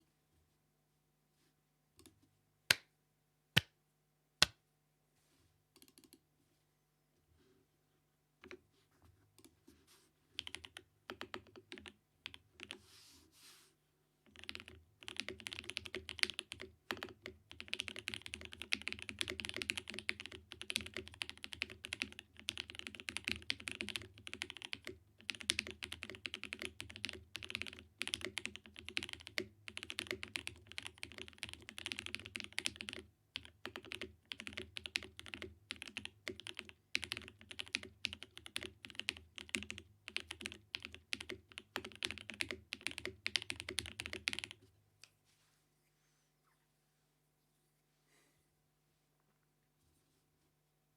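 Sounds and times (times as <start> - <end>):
mechanical keyboard typing: 10.4 - 12.8, 14.3 - 44.6.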